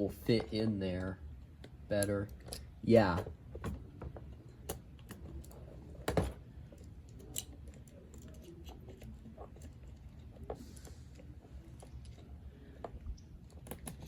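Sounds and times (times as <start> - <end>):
plastic toy parts clicking: 6.7 - 10.3.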